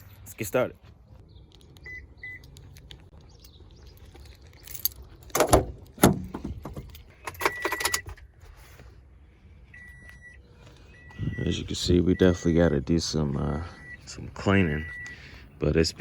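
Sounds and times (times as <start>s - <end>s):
keys jangling: 4.2s - 5.4s
loud thumps: 5.3s - 6.9s.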